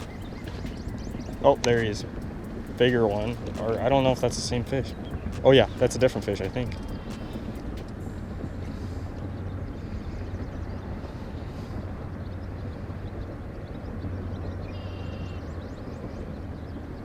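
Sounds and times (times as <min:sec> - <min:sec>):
high chirp: 0:00.0 - 0:08.3
low mechanical drone: 0:00.0 - 0:17.0.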